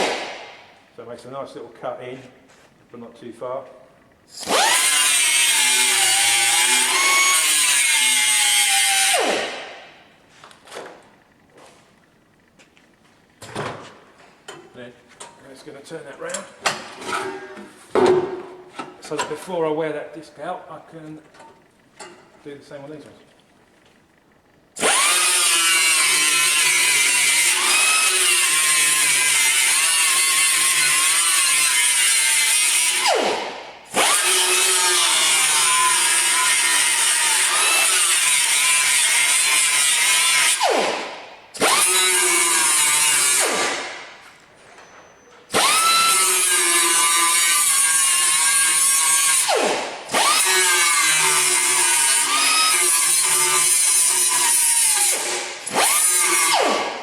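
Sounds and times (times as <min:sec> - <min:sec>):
angle grinder grinding metal: 0:04.3 - 0:09.6, 0:24.8 - 0:40.9, 0:41.6 - 0:44.0, 0:45.5 - 0:56.9.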